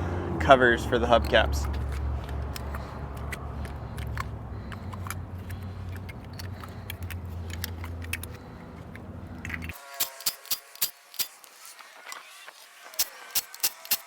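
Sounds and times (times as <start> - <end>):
small clicks and clinks: 1.2 - 11.4.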